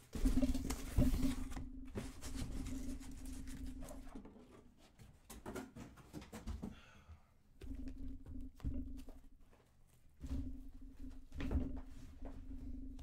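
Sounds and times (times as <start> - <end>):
low steady hum: 7.5 - 13.0.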